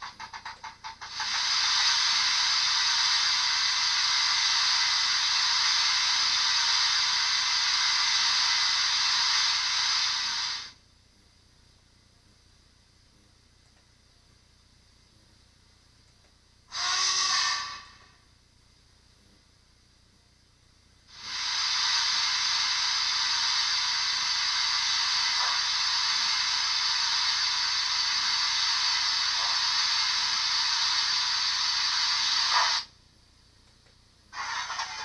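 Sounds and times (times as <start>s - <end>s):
model locomotive steam hiss: 0.0s - 10.8s, 16.7s - 18.3s, 21.1s - 32.9s, 34.3s - 35.0s.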